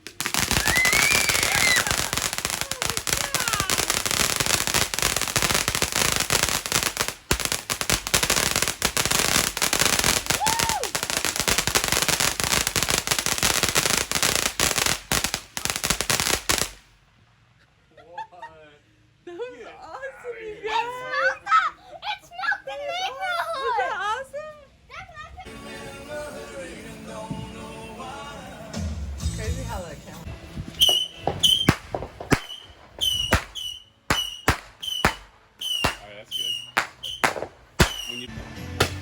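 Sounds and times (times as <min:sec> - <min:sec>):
fireworks crackling: 0:00.0 - 0:17.4, 0:25.4 - 0:39.0.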